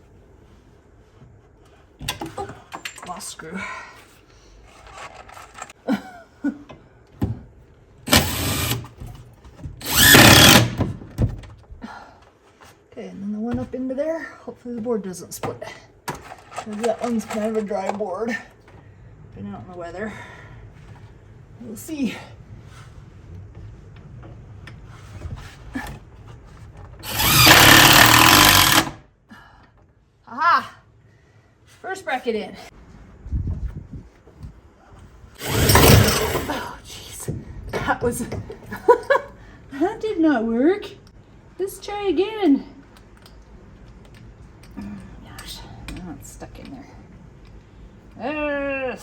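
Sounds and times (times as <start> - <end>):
power drill driving a screw: 8.1 - 8.9, 9.8 - 10.8, 27.0 - 29.0, 35.4 - 36.5.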